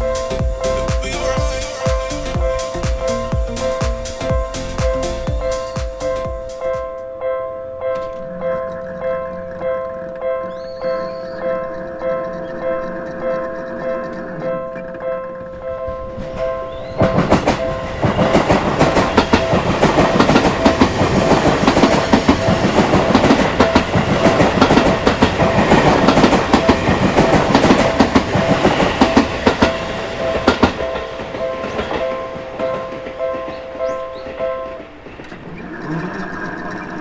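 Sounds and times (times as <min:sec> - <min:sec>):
train wheels clacking on rail joints: 0:16.0 - 0:35.7.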